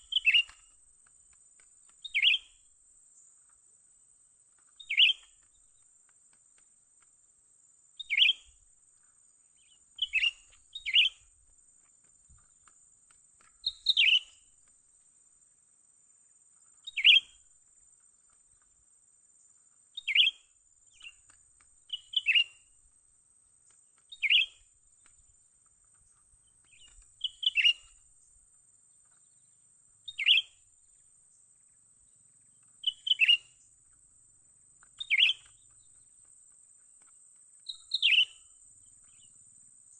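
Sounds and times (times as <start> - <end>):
bird chirping sharply: 0.0 - 0.6, 2.0 - 2.5, 4.8 - 5.3, 8.0 - 8.5, 9.6 - 11.2, 13.6 - 14.4, 16.9 - 17.4, 20.0 - 20.4, 21.9 - 22.6, 24.1 - 24.6, 26.7 - 27.9, 30.1 - 30.6, 32.8 - 33.5, 35.0 - 35.5, 37.7 - 38.5.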